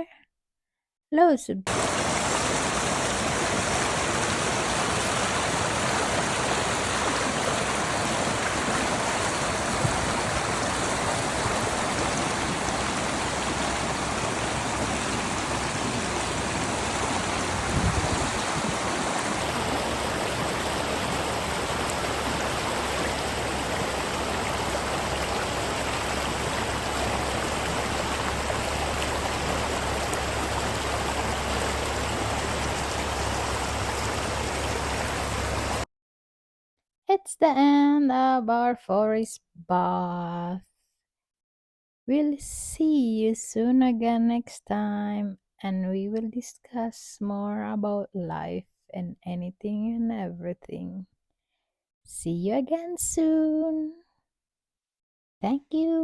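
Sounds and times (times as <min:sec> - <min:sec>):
stream water rushing: 0:01.7 - 0:35.8.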